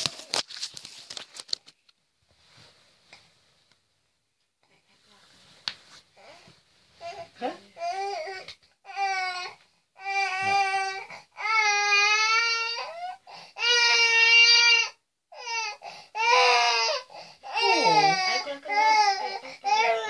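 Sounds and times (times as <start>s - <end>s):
baby crying: 6.2s - 20.0s.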